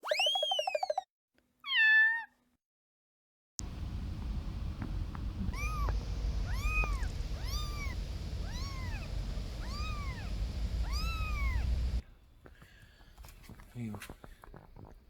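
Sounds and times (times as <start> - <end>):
steady low rumble: 3.6 - 12.0
kitten meowing: 5.4 - 12.0.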